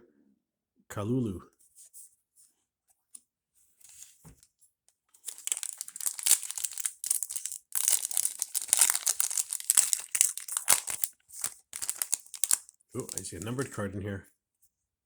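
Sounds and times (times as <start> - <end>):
foil wrapper crinkling and tearing: 5.2 - 13.7.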